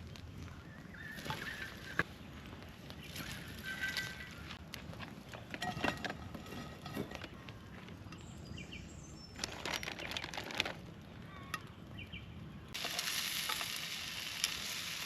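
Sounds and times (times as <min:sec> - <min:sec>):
campfire crackles: 0:00.0 - 0:08.4, 0:09.0 - 0:15.0
food sizzling in a pan: 0:12.8 - 0:15.0.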